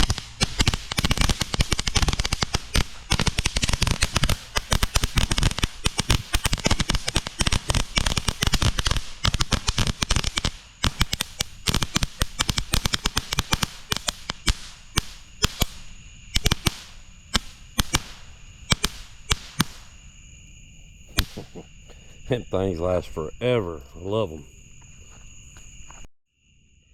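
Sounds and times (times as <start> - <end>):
firework crackling and popping: 0.0 - 20.0, 21.1 - 21.6.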